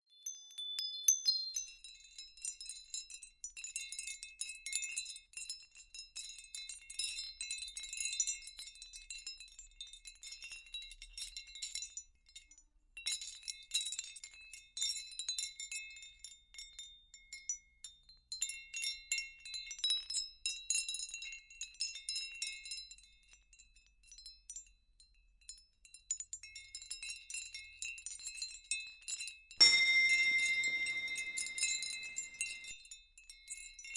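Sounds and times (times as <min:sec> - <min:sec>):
wind chimes tinkling: 0:00.0 - 0:02.0, 0:29.6 - 0:32.8.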